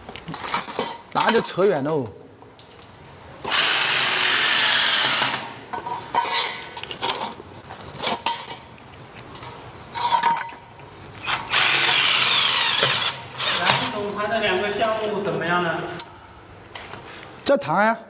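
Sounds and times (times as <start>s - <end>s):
power tool running: 3.5s - 5.6s, 11.2s - 14.1s.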